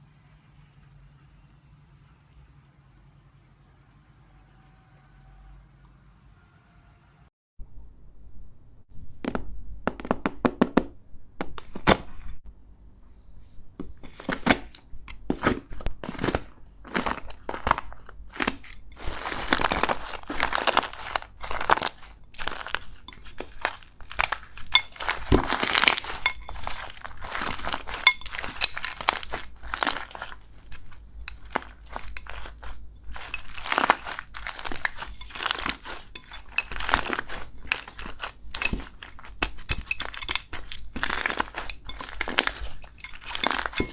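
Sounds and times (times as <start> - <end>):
slime crackling and popping: 14.2 - 43.9.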